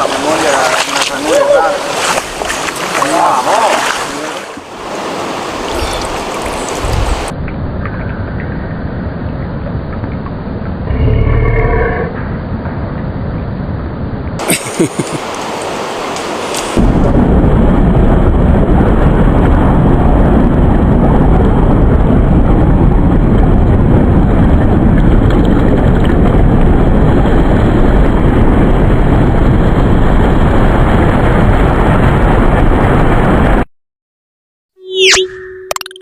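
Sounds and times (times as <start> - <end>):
loud bassy rushing noise: 10.4 - 33.7.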